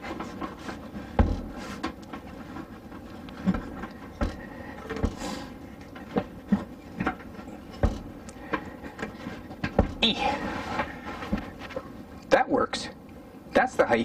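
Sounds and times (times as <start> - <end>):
table stand knocks and clunks: 1.1 - 2.0.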